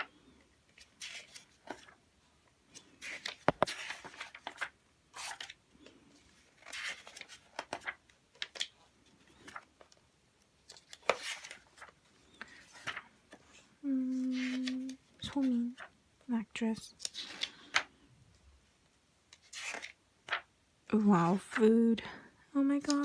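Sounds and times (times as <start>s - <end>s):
magazine pages turning: 0.7s - 2.0s, 2.7s - 10.0s, 10.6s - 13.4s, 14.2s - 15.9s, 16.9s - 17.9s, 19.3s - 20.5s.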